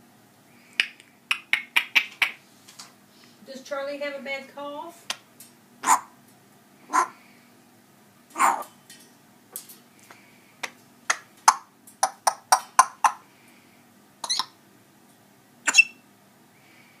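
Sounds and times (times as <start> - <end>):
parrot clicking and coughing: 8.3 - 8.7, 10.6 - 13.2
parrot squeaky call: 14.2 - 14.6, 15.6 - 16.0.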